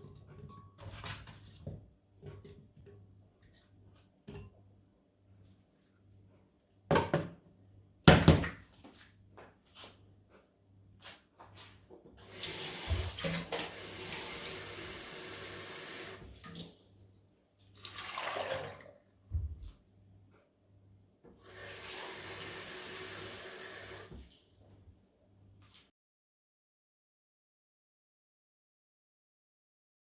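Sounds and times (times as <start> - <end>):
tap water running into sink: 12.2 - 16.7, 17.8 - 18.9, 21.4 - 24.4.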